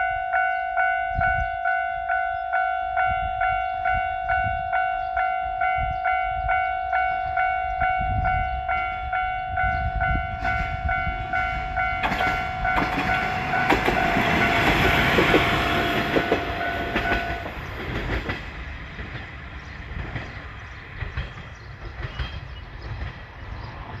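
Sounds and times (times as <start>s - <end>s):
level crossing warning bell: 0.0s - 17.8s
train wheels clacking over rail joints: 10.4s - 24.0s.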